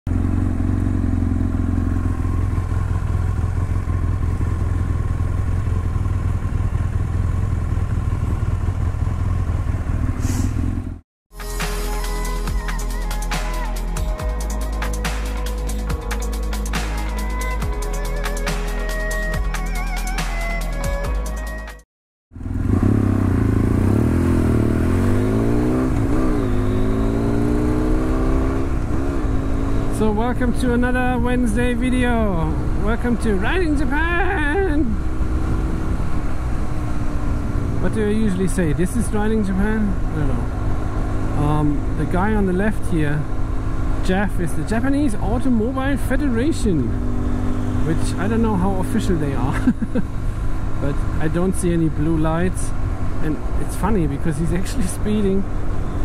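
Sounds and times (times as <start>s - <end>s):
motorcycle engine running: 0.1s - 21.5s, 22.3s - 56.0s
electronic music: 11.4s - 21.8s.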